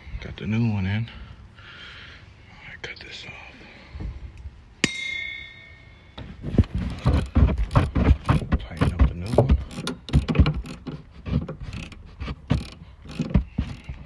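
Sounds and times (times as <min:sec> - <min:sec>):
low metallic knocks: 0:04.8 - 0:10.7
ratchet wrench clicking: 0:07.1 - 0:11.0, 0:11.7 - 0:13.9.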